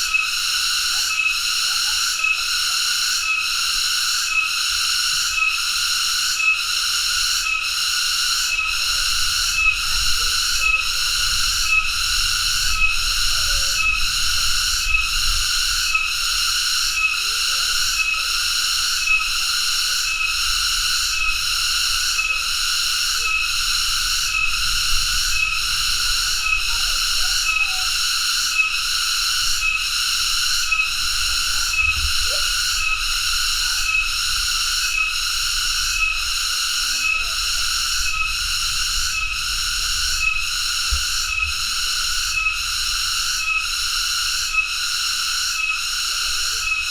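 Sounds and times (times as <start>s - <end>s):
cicada shrill pulsing buzz: 0.0s - 46.9s.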